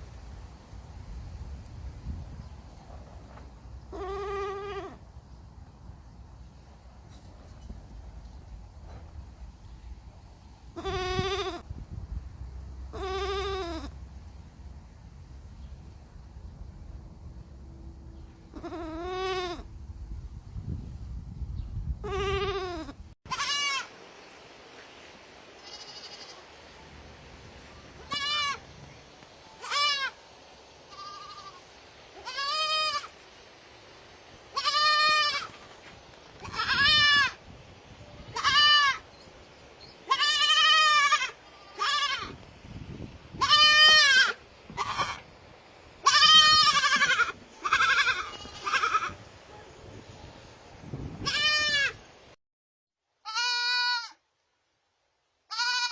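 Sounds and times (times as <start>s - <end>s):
baby goats bleating: 3.9s - 5.0s, 10.8s - 11.7s, 12.9s - 14.0s, 18.5s - 19.7s, 22.0s - 23.9s, 25.6s - 26.4s, 28.0s - 28.6s, 29.6s - 30.2s, 30.9s - 31.6s, 32.2s - 33.1s, 34.5s - 35.6s, 36.4s - 37.4s, 38.3s - 39.0s, 40.1s - 42.4s, 43.4s - 45.3s, 46.0s - 49.2s, 51.2s - 52.0s, 53.2s - 54.2s, 55.5s - 55.9s.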